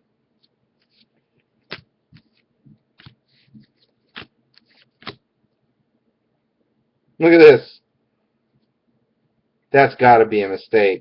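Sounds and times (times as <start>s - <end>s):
cards flicked by hand: 0.4s - 5.2s.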